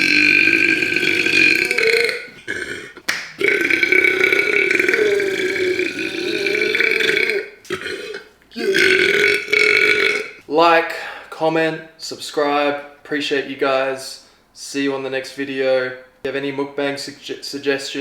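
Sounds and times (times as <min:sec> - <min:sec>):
man burping loudly: 0:00.0 - 0:10.4.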